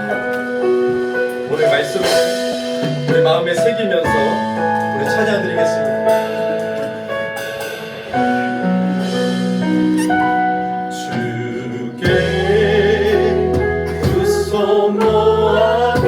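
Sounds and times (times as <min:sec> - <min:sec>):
band playing with bass: 0:00.0 - 0:16.0
keyboard playing held chords: 0:00.0 - 0:16.0
person singing a hymn: 0:10.9 - 0:16.0.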